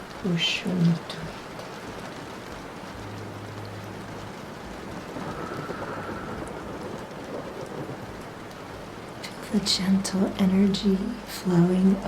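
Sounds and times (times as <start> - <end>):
rain falling: 0.0 - 12.0
low rumbling: 2.6 - 9.2.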